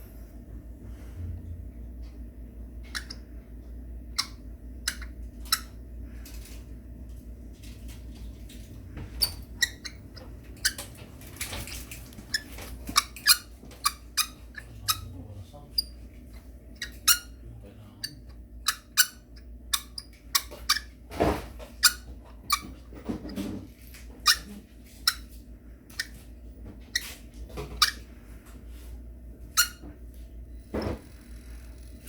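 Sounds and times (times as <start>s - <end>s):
steady low hum: 0.0s - 32.0s
motor squeaking chirps: 2.8s - 3.4s, 4.1s - 5.8s, 8.9s - 10.9s, 12.1s - 17.4s, 18.0s - 21.0s, 27.8s - 28.1s, 29.5s - 32.0s.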